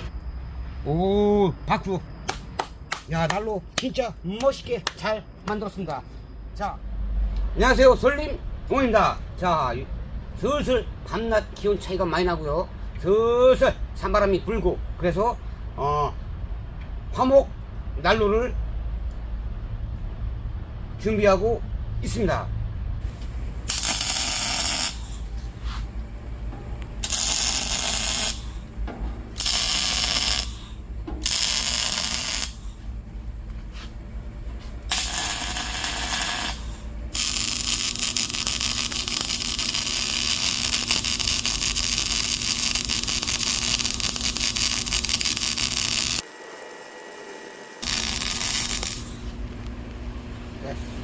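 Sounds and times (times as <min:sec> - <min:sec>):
arc welding crackling: 0:23.1 - 0:33.0, 0:34.8 - 0:50.1.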